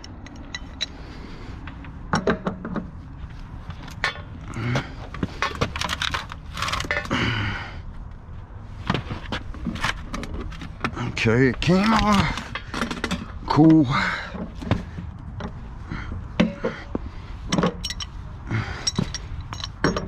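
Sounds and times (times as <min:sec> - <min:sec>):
metal clanking and scraping: 0:00.0 - 0:07.2, 0:08.8 - 0:15.6, 0:16.2 - 0:20.0
sharp metal knocks: 0:18.9 - 0:20.0.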